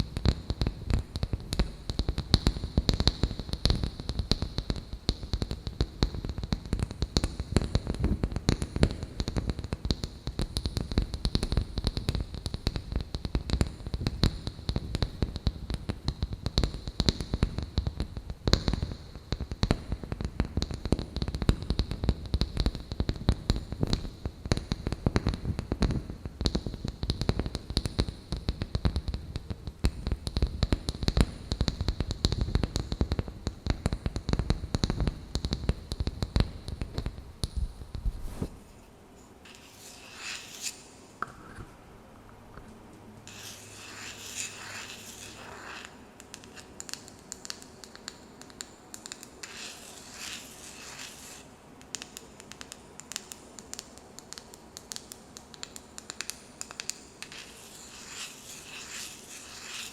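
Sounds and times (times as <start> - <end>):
fingers scratching wood: 39.4 - 40.8, 43.3 - 45.9, 57.3 - 59.9.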